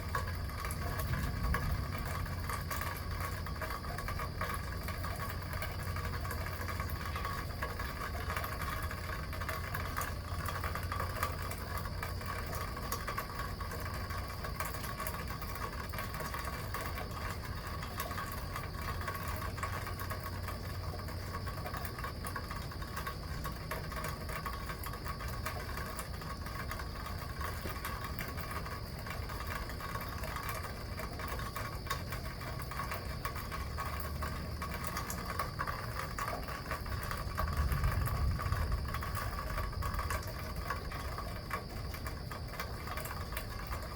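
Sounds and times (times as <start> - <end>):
steady rain: 0.0 - 43.9
water dripping from gutter: 0.0 - 43.9.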